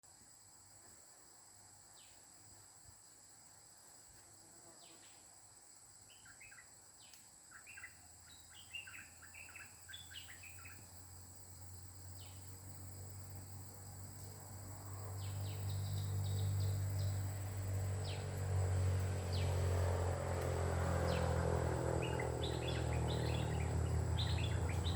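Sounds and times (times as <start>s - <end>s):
high insect drone: 0.0s - 24.9s
bird chirping: 6.1s - 11.0s, 12.1s - 12.8s, 15.0s - 18.3s, 22.0s - 24.9s.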